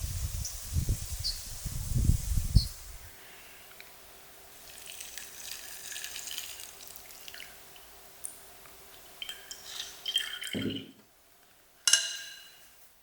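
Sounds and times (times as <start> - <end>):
water splashing at a sink: 9.0 - 10.9.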